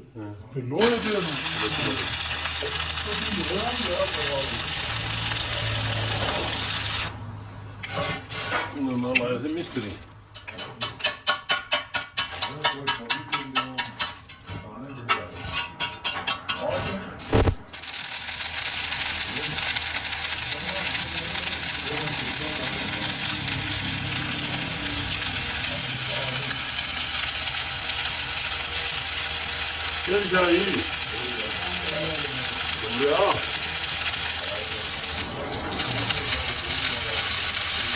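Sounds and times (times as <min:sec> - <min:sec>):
steady machine noise: 0:00.8 - 0:07.3, 0:17.2 - 0:37.9
strokes on metal: 0:07.8 - 0:17.6.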